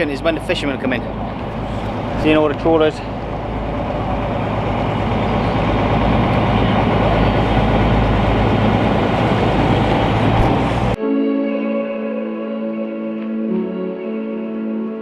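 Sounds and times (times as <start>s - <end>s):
diesel engine humming: 0.0s - 11.0s.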